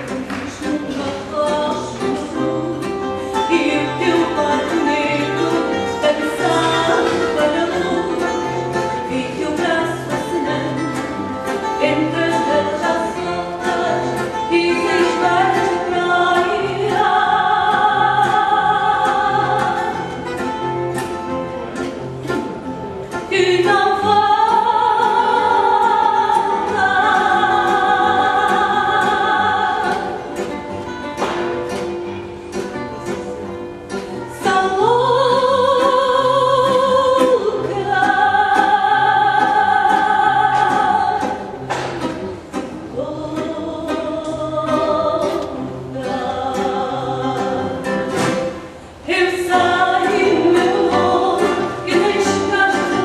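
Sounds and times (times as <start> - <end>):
guitars plucking accompaniment: 0.0 - 53.0
woman singing long notes: 11.8 - 20.2, 49.0 - 53.0.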